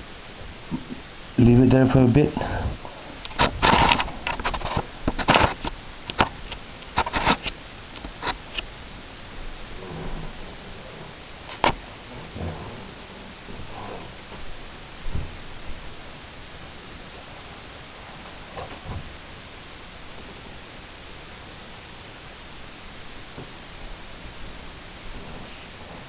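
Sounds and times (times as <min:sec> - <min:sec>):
background hiss: 0:00.0 - 0:26.0
dull low thump: 0:15.0 - 0:15.9.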